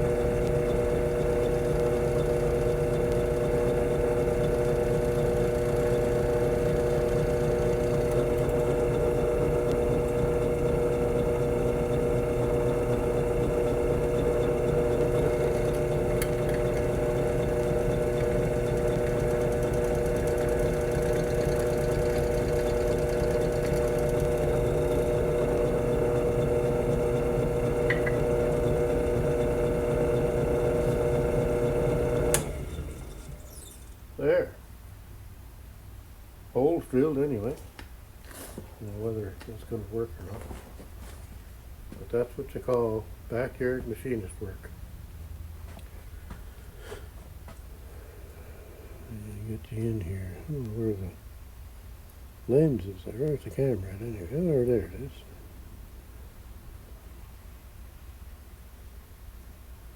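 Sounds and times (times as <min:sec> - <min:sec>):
electric drill whining: 0:00.0 - 0:34.0.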